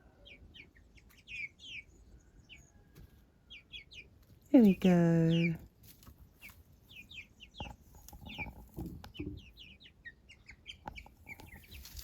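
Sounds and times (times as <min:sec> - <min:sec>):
chicks peeping: 0:00.0 - 0:12.0.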